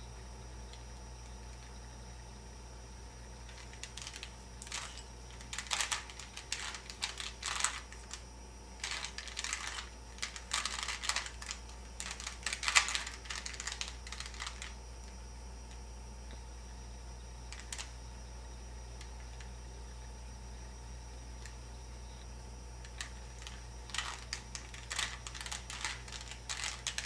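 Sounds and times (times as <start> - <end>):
puzzle cube clicking rattle: 3.5 - 8.2, 8.8 - 14.8, 17.5 - 17.9, 22.9 - 27.0.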